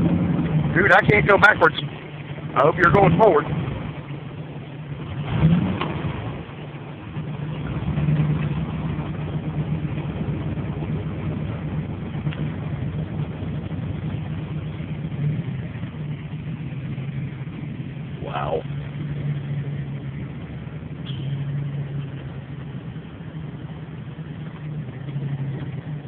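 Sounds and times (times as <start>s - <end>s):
car engine humming: 0.0s - 26.0s.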